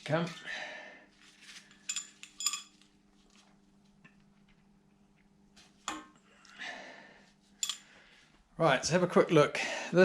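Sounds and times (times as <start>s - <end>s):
faint steady hum: 0.0s - 10.0s
light metallic clinks: 1.8s - 2.8s, 7.6s - 7.9s.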